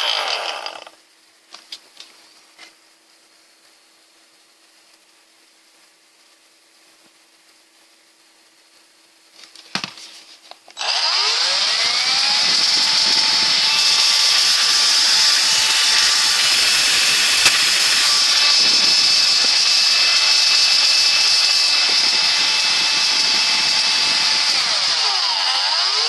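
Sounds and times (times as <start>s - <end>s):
vacuum motor whining and hissing: 10.8s - 26.0s.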